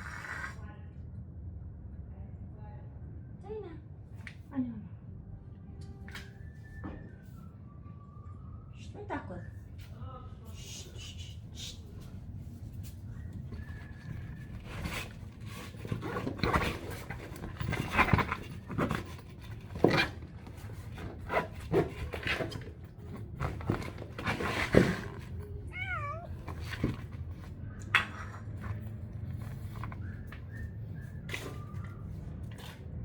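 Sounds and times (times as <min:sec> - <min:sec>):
cat crying: 0:00.0 - 0:00.6, 0:25.5 - 0:26.5
knocks and rustles: 0:12.7 - 0:32.9.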